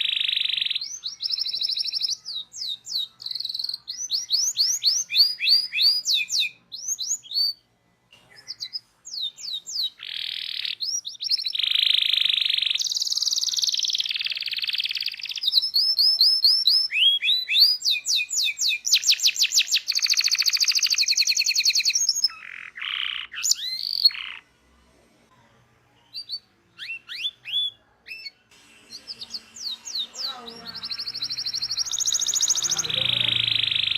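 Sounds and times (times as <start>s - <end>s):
canary singing: 0.0s - 24.5s, 26.0s - 33.9s.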